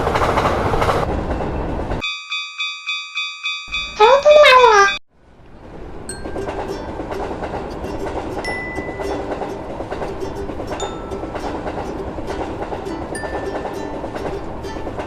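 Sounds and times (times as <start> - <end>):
train rumbling: 0.0 - 2.0, 3.7 - 15.0
wheels clacking over rail joints: 0.0 - 2.0, 5.4 - 15.0.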